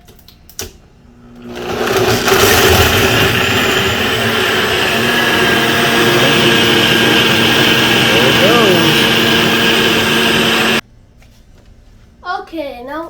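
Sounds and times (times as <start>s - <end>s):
blender motor running: 1.2s - 10.8s.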